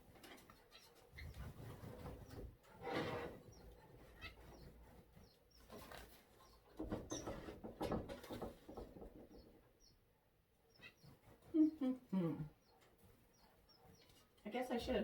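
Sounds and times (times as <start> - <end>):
rustling and knocks of handling: 0.0 - 9.8
birds chirping: 0.2 - 7.5, 8.3 - 15.0.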